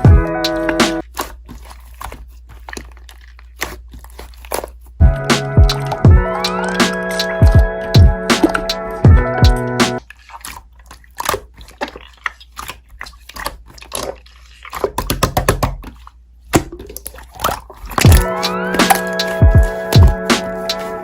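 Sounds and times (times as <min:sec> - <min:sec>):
background music: 0:00.0 - 0:01.0, 0:05.0 - 0:10.0, 0:18.1 - 0:21.0
slime squeezed by hand: 0:00.0 - 0:21.0.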